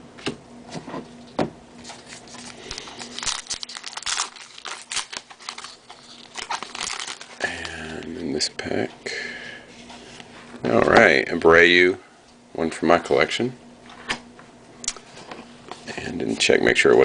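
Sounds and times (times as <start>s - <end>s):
wrapper crinkling and tearing: 1.8s - 8.0s.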